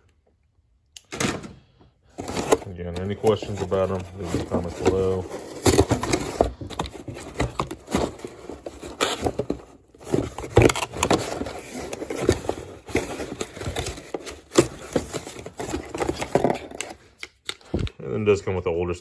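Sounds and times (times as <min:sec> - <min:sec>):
hand tools and packaging handled: 0:02.0 - 0:18.0.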